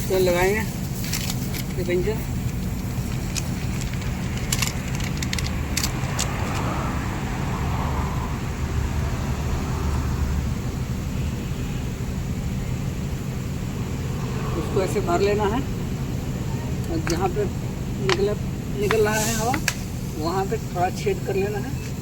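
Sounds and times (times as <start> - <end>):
road traffic hum: 0.0 - 22.0
sharp clicks: 2.5 - 6.7.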